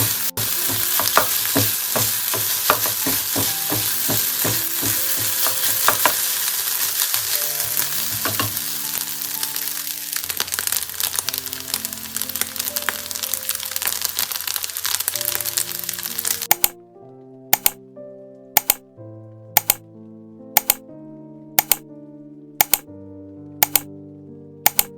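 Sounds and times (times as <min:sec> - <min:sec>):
food sizzling in frying pan: 0:00.0 - 0:16.5
background music: 0:00.0 - 0:24.9
sharp clicks: 0:16.4 - 0:16.8, 0:17.6 - 0:17.8, 0:18.6 - 0:18.8, 0:19.6 - 0:19.8, 0:20.6 - 0:20.8, 0:21.6 - 0:21.8, 0:22.6 - 0:22.9, 0:23.6 - 0:23.9, 0:24.6 - 0:24.9.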